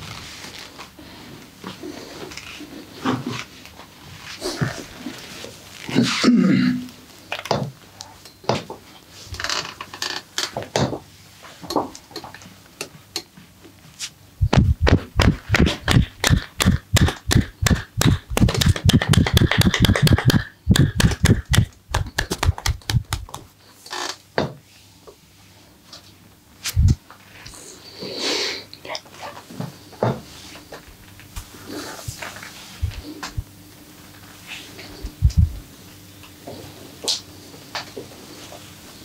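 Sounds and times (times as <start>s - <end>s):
hands striking body in massage: 14.4s - 23.4s.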